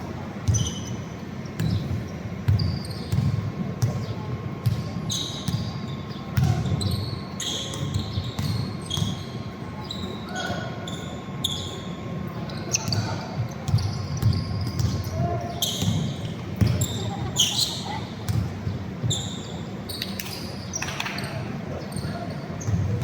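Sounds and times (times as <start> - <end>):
basketball bouncing on court: 0.4 - 9.4, 12.7 - 19.6, 22.0 - 23.0
sneaker squeaks: 0.4 - 23.0.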